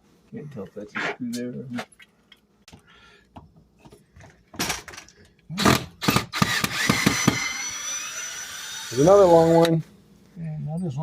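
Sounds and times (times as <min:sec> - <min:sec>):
drill clicks: 0:05.6 - 0:09.0
power drill whining: 0:05.6 - 0:09.8.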